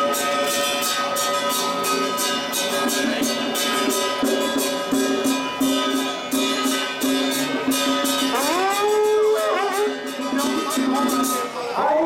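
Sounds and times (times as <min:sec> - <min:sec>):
percussion beat: 0:00.0 - 0:12.0.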